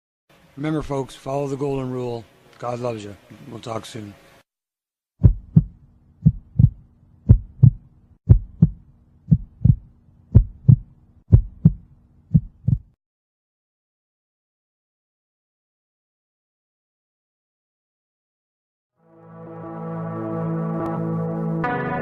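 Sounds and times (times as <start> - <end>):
heartbeat double thuds: 5.2 - 13.0.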